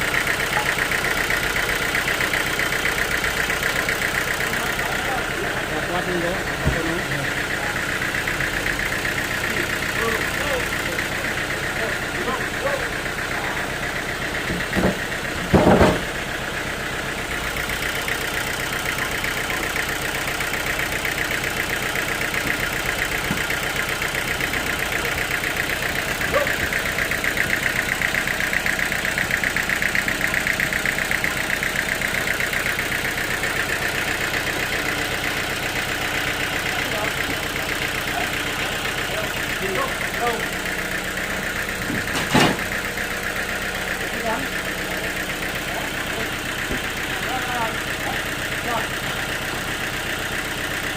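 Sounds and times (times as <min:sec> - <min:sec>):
sawmill machinery buzzing: 0:00.0 - 0:50.9
sharp knocks: 0:14.5 - 0:16.1.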